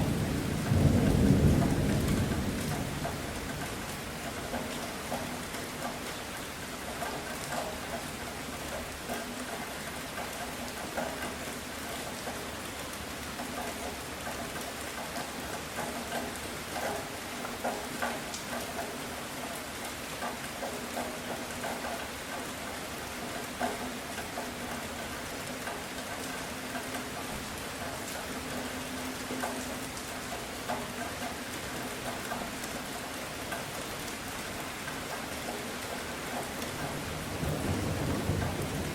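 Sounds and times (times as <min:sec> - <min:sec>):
raindrops ticking on a surface: 0:00.0 - 0:38.9
steady rainfall: 0:00.0 - 0:38.9.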